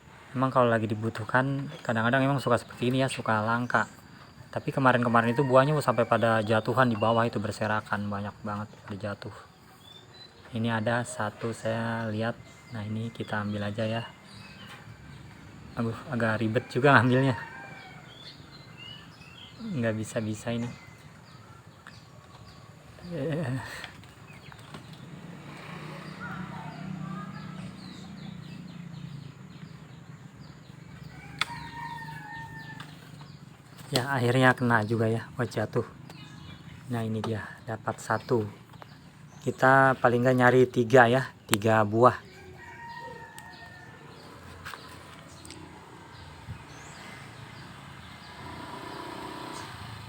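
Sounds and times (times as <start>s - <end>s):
small birds chirping: 0.0s - 50.0s
chickens calling: 1.0s - 50.0s.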